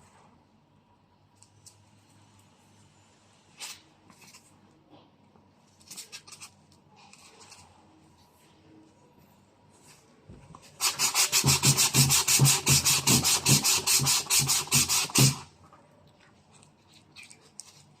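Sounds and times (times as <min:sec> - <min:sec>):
sandpaper rubbing back and forth: 0:10.8 - 0:15.4.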